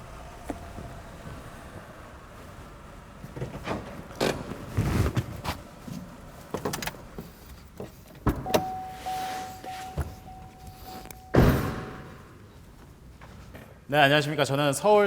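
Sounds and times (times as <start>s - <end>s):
car electronic warning tone: 8.4s - 12.4s
clicks and knocks of car door: 9.8s - 12.2s.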